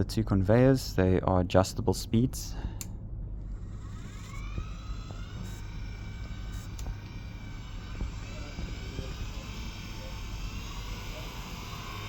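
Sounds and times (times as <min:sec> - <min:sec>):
electric motors whining: 0:03.4 - 0:12.0.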